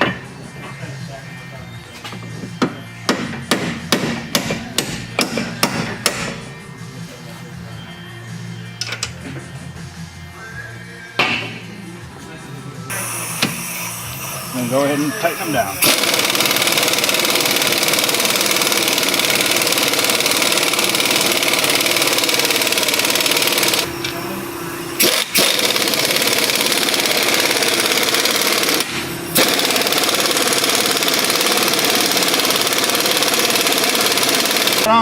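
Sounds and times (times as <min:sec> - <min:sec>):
pneumatic impact wrench: 0:12.9 - 0:24.2, 0:25.0 - 0:34.9.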